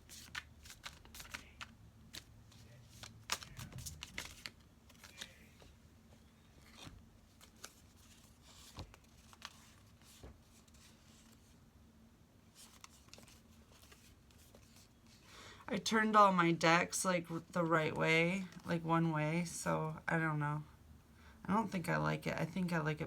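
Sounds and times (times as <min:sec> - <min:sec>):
tarot cards clicking and rustling: 0:00.1 - 0:05.7, 0:06.6 - 0:11.4, 0:12.5 - 0:15.2.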